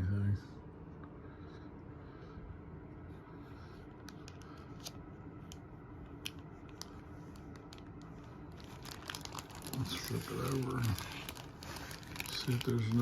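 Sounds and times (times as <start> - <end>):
steady low hum: 0.0 - 13.0
plastic bag ticks and crinkles: 6.2 - 13.0.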